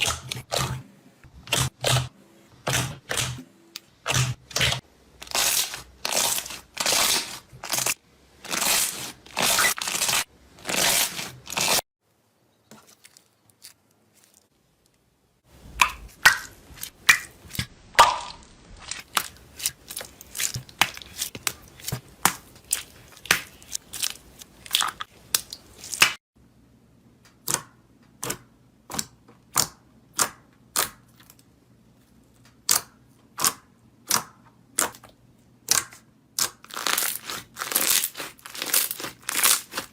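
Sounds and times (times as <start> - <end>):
slime squishing: 15.7 - 26.2, 32.6 - 39.9
slime crackling: 36.4 - 39.9.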